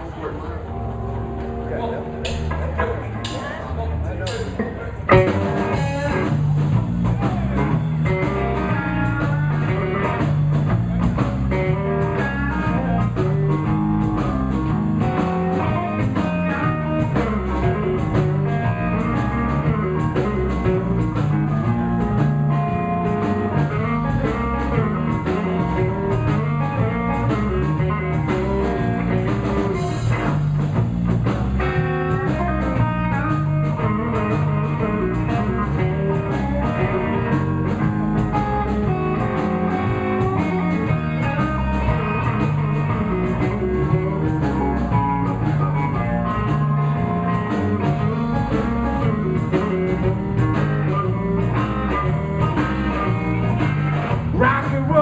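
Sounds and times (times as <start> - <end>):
electric guitar lines: 0.0 - 55.0
drum kit steady beat: 1.8 - 55.0.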